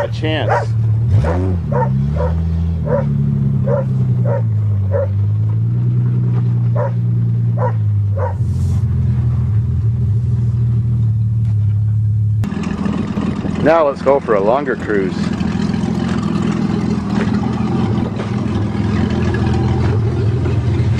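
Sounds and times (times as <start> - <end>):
dog barking: 0.0 - 5.2, 6.7 - 7.0, 7.6 - 8.5
car engine running: 0.0 - 20.9.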